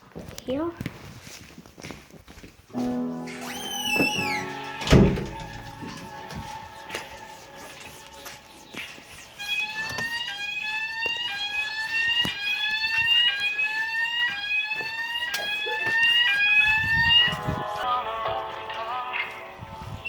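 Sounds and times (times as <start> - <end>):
fire alarm rising sweep tone: 2.8 - 7.4, 9.4 - 17.4.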